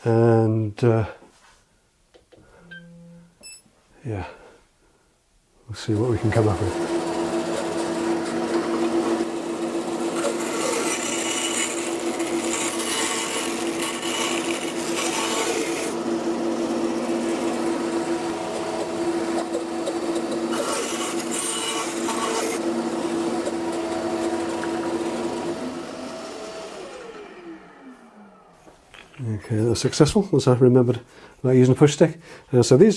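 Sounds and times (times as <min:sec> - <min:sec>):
bandsaw cutting plastic: 0:06.0 - 0:28.3
bandsaw humming: 0:06.0 - 0:28.6
saw blade running down: 0:06.1 - 0:28.5.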